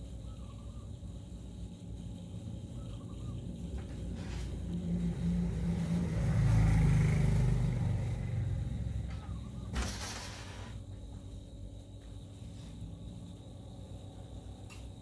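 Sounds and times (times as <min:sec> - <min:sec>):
vehicle driving past: 0:03.4 - 0:09.8.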